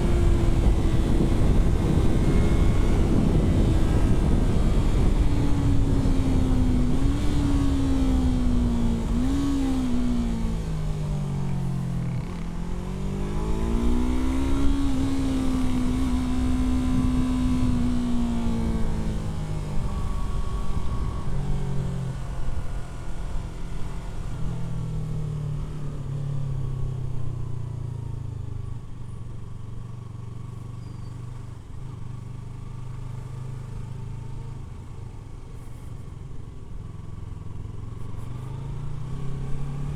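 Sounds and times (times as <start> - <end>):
motorcycle engine revving: 0.0 - 24.9.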